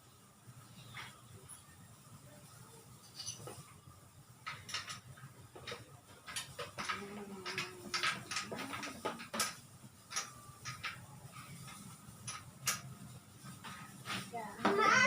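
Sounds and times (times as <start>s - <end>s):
light clicks and knocks of handling: 4.4s - 14.8s.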